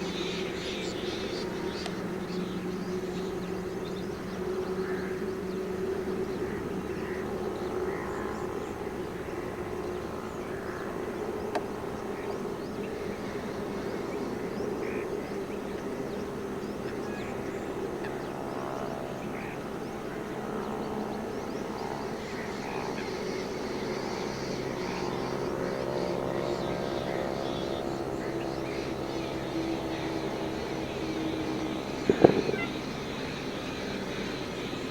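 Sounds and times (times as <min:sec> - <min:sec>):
low mechanical hum: 0:00.0 - 0:34.9
faint short bird calls: 0:32.0 - 0:32.9.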